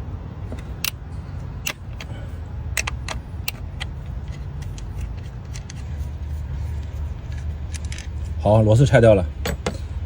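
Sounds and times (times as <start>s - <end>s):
steady low hum: 0.0s - 10.0s
wrench metallic clicks and taps: 0.5s - 1.0s, 2.7s - 8.2s.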